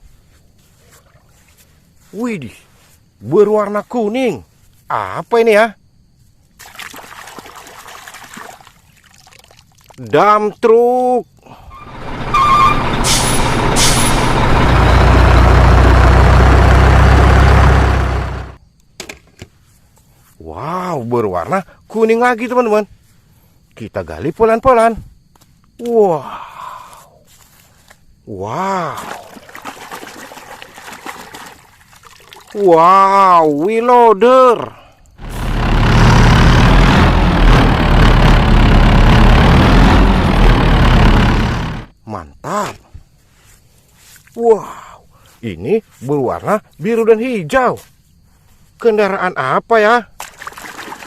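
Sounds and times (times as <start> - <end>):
truck engine idling: 11.8 - 18.6, 35.2 - 41.9.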